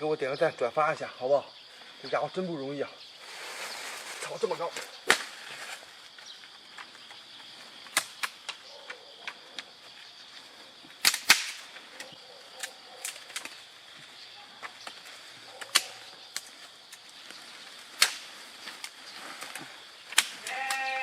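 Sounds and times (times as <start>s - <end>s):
dry stalks snapping and crackling: 3.6s - 7.2s, 7.8s - 8.6s, 10.4s - 21.0s.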